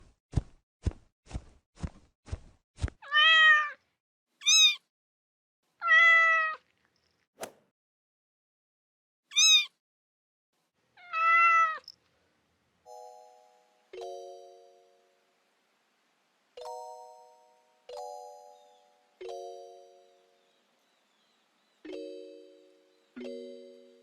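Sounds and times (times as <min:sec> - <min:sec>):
cat meowing: 0:03.0 - 0:03.8, 0:04.4 - 0:04.8, 0:05.8 - 0:06.7, 0:09.3 - 0:09.7, 0:11.0 - 0:11.9.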